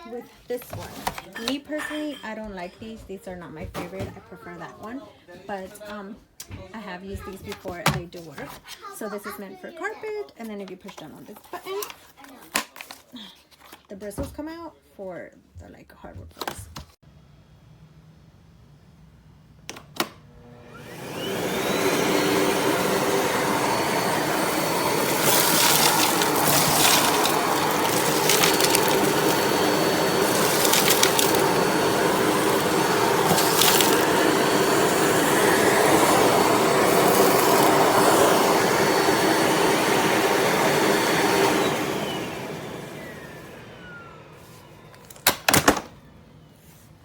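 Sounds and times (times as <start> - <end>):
vacuum cleaner running: 20.3 - 46.5.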